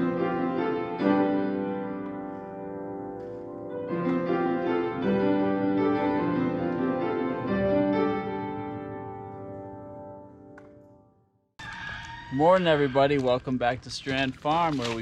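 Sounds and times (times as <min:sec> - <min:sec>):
slow piano chords: 0:00.0 - 0:11.2.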